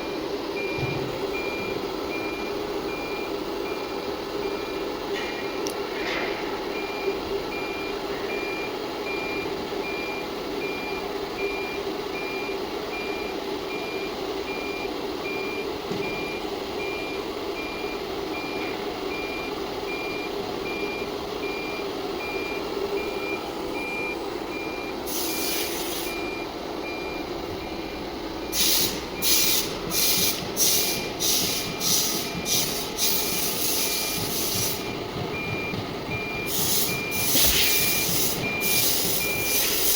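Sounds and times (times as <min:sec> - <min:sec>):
pulsed high beep: 0:06.8 - 0:39.9
compressed air hiss: 0:25.1 - 0:26.1, 0:28.5 - 0:34.8, 0:36.5 - 0:39.9
short pneumatic air blasts: 0:25.1 - 0:26.2, 0:28.5 - 0:34.9, 0:36.5 - 0:39.9.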